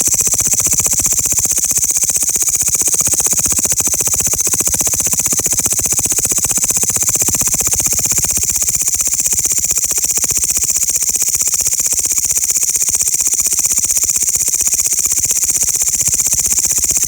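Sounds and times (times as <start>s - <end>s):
grasshoppers buzzing: 0.0s - 10.9s.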